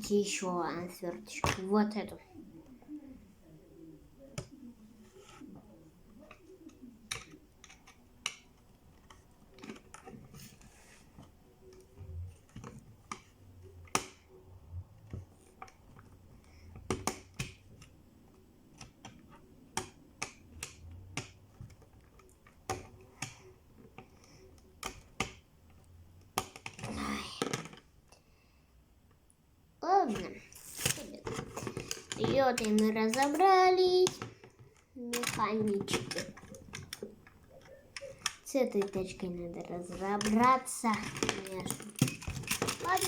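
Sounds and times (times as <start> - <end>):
plastic toy parts handled: 6.3 - 14.2, 30.0 - 43.0.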